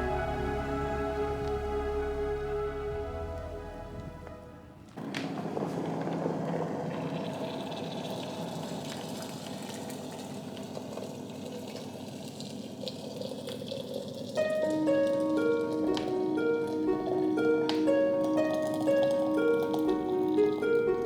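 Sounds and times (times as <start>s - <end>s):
water running into vessel: 6.7s - 21.0s.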